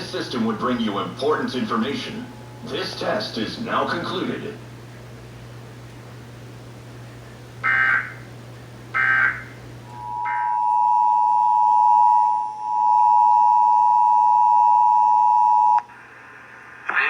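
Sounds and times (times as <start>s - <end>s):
two-tone attention signal: 9.9s - 15.8s.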